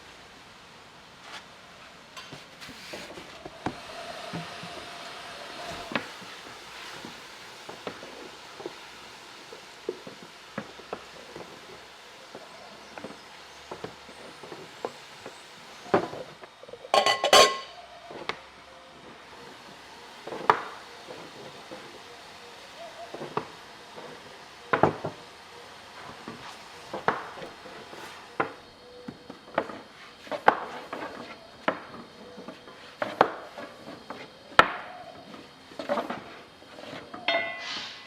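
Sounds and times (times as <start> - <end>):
knocks and clinks of hard objects: 16.9 - 17.8, 37.2 - 38.0.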